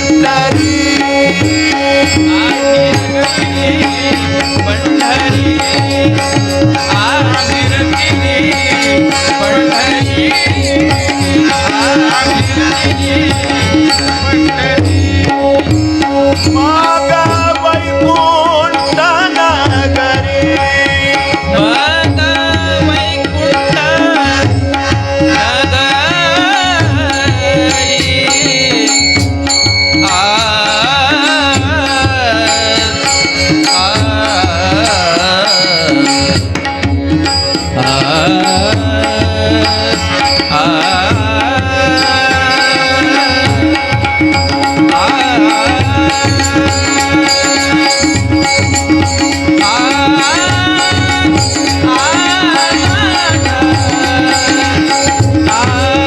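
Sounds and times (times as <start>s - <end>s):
tabla rhythm: 0.0s - 56.0s
ornamented sliding melody: 21.7s - 56.0s.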